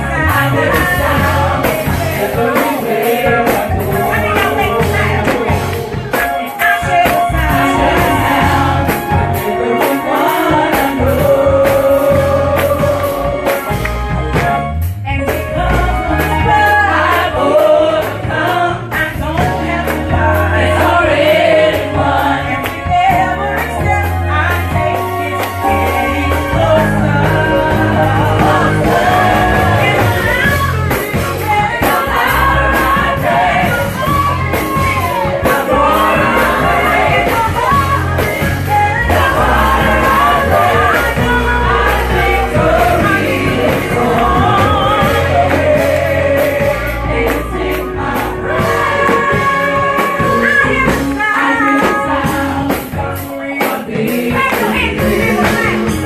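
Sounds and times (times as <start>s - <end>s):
gospel singers over full band: 0.0s - 56.0s.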